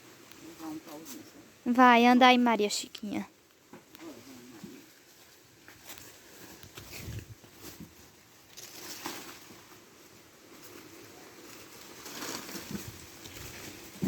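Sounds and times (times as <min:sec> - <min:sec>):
cart scuffing along ground: 0:05.0 - 0:09.8, 0:10.4 - 0:14.0.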